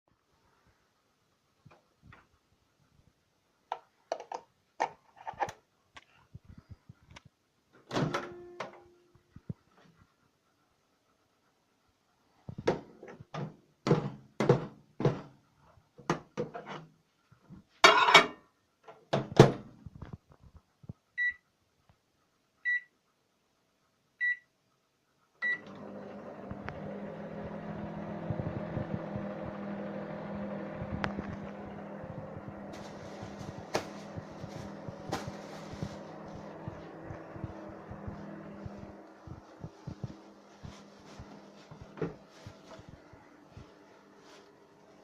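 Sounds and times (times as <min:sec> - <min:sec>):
microwave running hum: 0:25.4 - 0:45.0
microwave being handled: 0:28.6 - 0:38.7.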